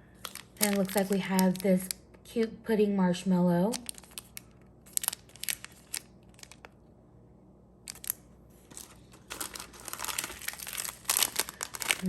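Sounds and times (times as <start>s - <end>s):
plastic wrappers crinkling: 0.2s - 2.2s, 3.6s - 6.8s, 7.9s - 12.0s.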